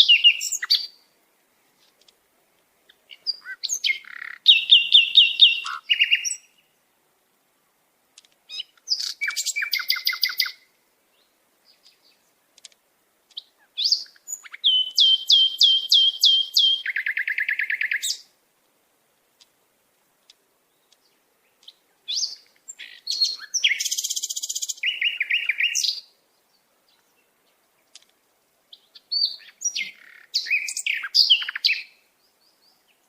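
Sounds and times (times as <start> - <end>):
sparrow singing: 0.0 - 1.0, 2.8 - 6.7, 8.5 - 12.4, 13.3 - 18.3, 20.7 - 33.0.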